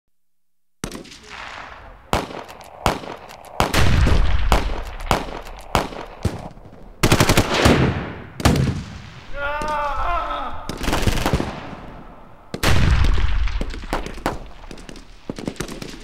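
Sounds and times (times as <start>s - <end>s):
gunshots echoing: 0.8s - 16.0s
heavy blast with deep rumble: 1.3s - 7.0s, 11.2s - 14.6s.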